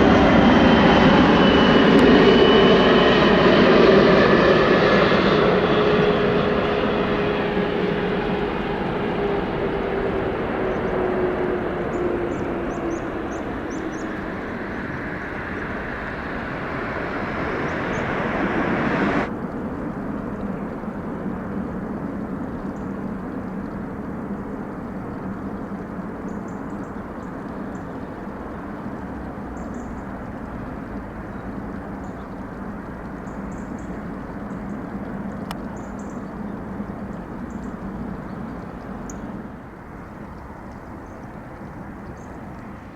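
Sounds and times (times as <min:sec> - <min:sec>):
low hum: 0:00.0 - 0:20.4
distant jet rumble: 0:00.0 - 0:21.5, 0:30.1 - 0:42.9
jet engines passing close: 0:00.0 - 0:42.9.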